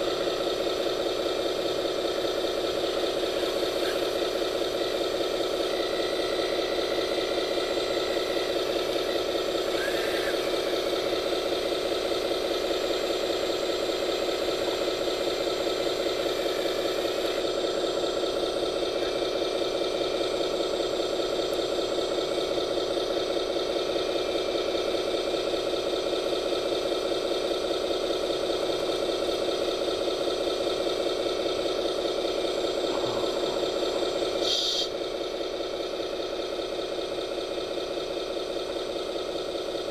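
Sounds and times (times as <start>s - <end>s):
toy machine motor drone: 3.1s - 13.2s, 32.8s - 35.0s.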